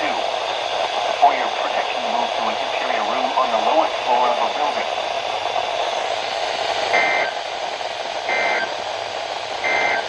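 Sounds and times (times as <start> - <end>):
radio static hiss: 0.0 - 7.4, 8.2 - 8.8, 9.5 - 10.0
two-tone digital data bursts: 7.0 - 7.4, 8.3 - 8.8, 9.6 - 10.0.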